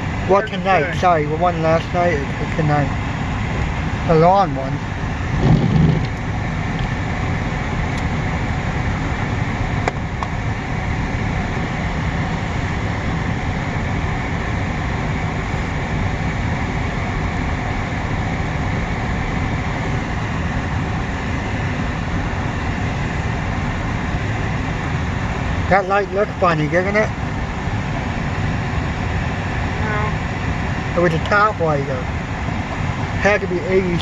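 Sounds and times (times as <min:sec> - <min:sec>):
freight train wheels rumbling: 0:00.0 - 0:12.9.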